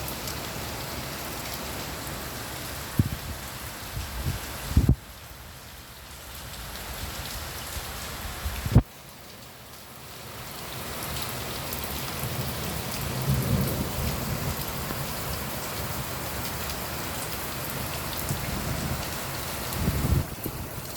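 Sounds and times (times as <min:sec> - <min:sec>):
rain splashing on a balcony: 0:00.0 - 0:20.9.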